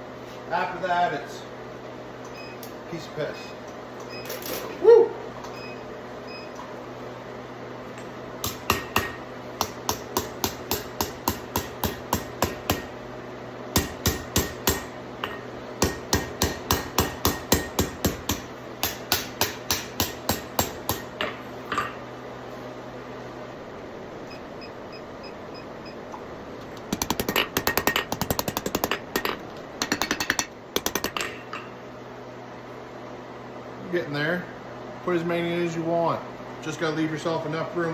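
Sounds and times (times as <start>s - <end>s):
hammer striking steel on anvil: 8.4s - 13.0s, 13.8s - 22.0s.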